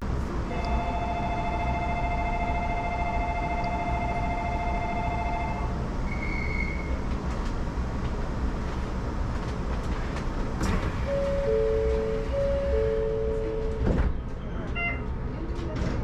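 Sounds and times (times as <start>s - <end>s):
monorail car humming: 0.0s - 16.0s
electronic signal tones: 0.5s - 6.4s, 11.0s - 13.9s.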